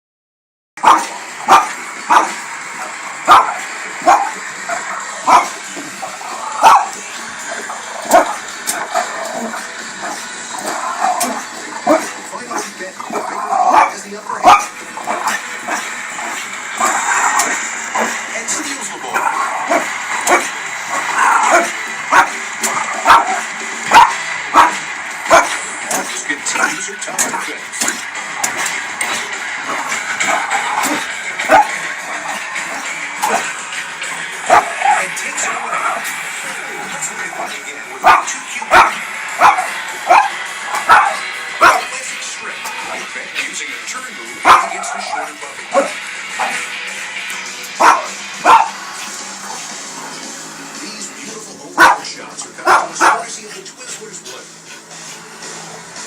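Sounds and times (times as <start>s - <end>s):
dog barking: 0.8s - 2.4s, 3.3s - 5.6s, 6.6s - 7.0s, 8.0s - 10.2s, 11.0s - 18.1s, 21.2s - 22.4s, 23.0s - 25.6s, 30.8s - 31.7s, 34.5s - 35.0s, 38.0s - 41.9s, 44.4s - 46.5s, 47.8s - 48.8s, 51.8s - 52.0s, 52.6s - 53.2s.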